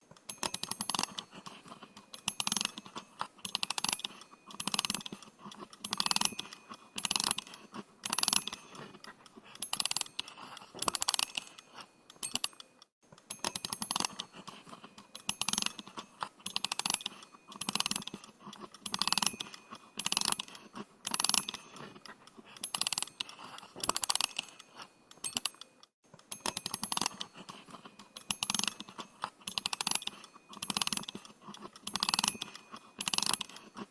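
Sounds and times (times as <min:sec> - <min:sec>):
clockwork ratchet clicking: 0:00.1 - 0:33.9.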